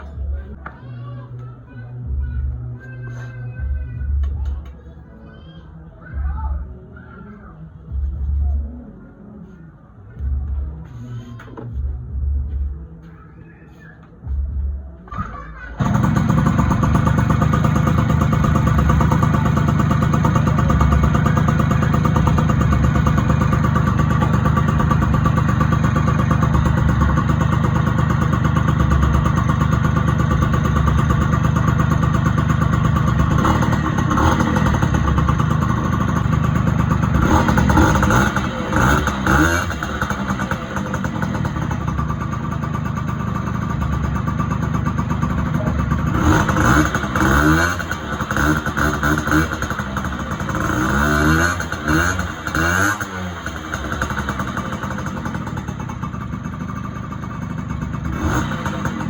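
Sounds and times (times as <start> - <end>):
scooter engine revving: 15.8 - 59.0.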